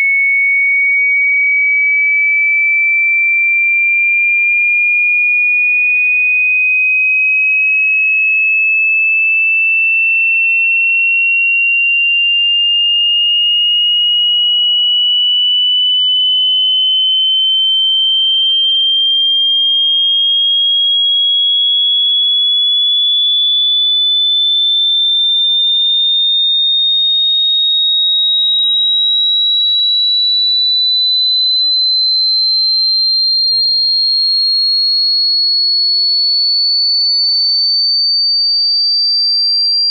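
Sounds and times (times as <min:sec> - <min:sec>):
rising sine tone: 0:14.4 - 0:19.8.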